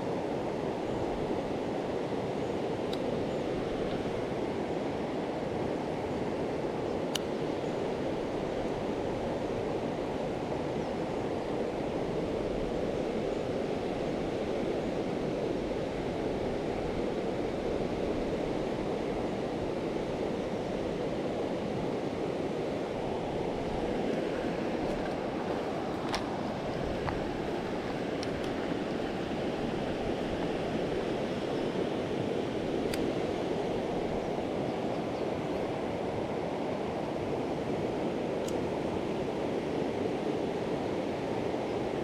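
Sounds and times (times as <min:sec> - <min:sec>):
flowing river rushing: 0:07.4 - 0:42.0.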